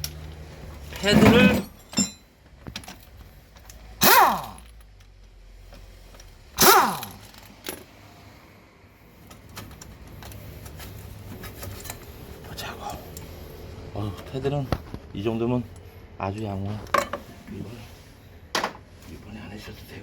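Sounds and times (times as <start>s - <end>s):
power tool bursts: 4.0s - 4.6s, 6.6s - 7.2s.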